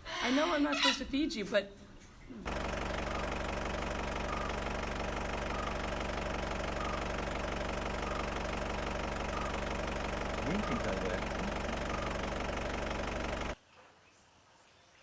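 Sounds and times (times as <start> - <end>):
engine idling: 2.4 - 13.6.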